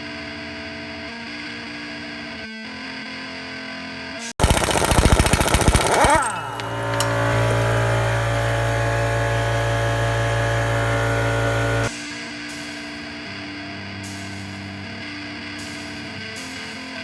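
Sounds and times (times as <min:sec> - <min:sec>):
motor-driven machine pulsing and humming: 0:04.4 - 0:11.9.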